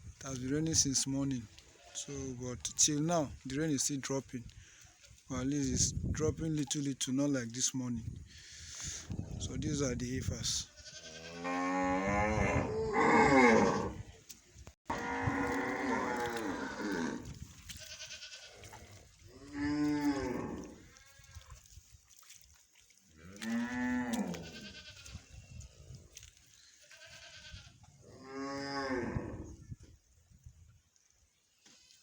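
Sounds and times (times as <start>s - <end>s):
heifers mooing loudly: 10.9s - 14.1s, 14.9s - 17.4s, 18.3s - 21.2s, 23.2s - 25.0s
faint cattle mooing: 14.9s - 21.4s.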